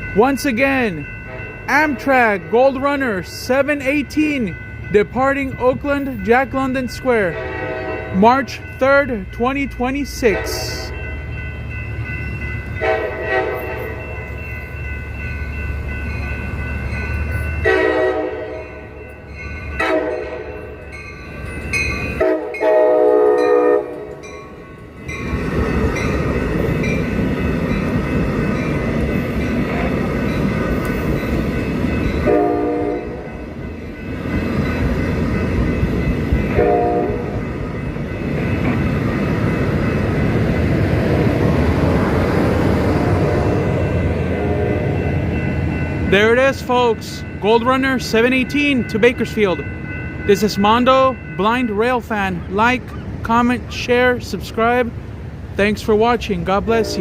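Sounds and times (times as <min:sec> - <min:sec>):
train rumbling past: 0:00.0 - 0:57.0
train horn blasts: 0:07.3 - 0:08.2, 0:10.3 - 0:10.8, 0:12.8 - 0:14.0, 0:17.6 - 0:18.7, 0:19.8 - 0:20.6, 0:22.2 - 0:24.2, 0:32.2 - 0:33.2, 0:36.5 - 0:37.4, 0:44.3 - 0:45.0, 0:56.7 - 0:57.0.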